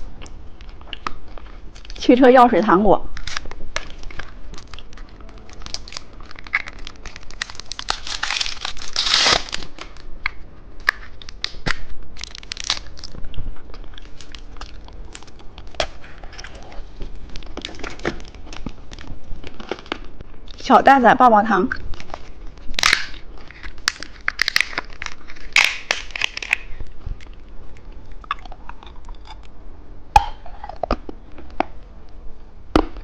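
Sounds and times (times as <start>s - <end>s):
plastic packaging crinkling: 3.1s - 20.2s, 21.8s - 27.4s.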